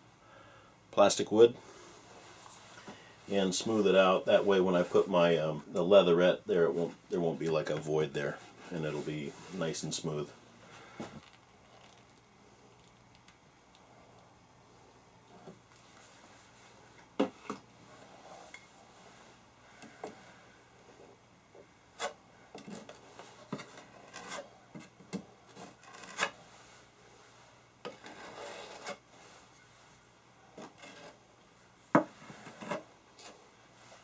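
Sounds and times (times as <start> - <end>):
filler scraping over wood: 27.9 - 29.5, 32.1 - 33.4.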